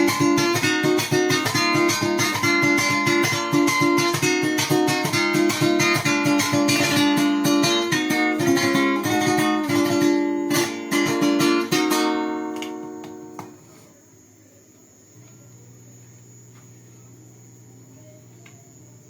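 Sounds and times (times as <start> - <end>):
guitar strumming: 0.0 - 13.7.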